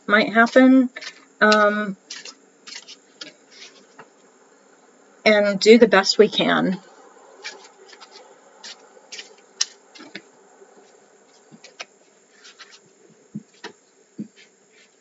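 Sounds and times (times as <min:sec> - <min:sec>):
faint steady hum: 0:00.0 - 0:15.0.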